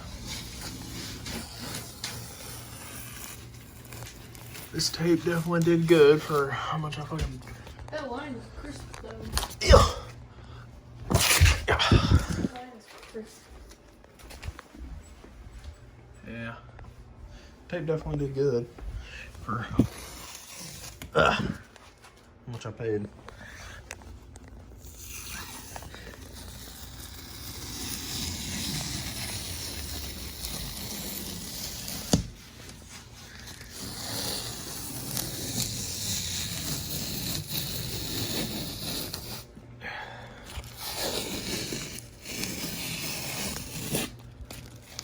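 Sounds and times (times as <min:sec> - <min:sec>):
tape peeling off surface: 0:00.0 - 0:06.4, 0:11.1 - 0:12.5, 0:19.4 - 0:22.1, 0:23.3 - 0:39.6, 0:40.4 - 0:45.0.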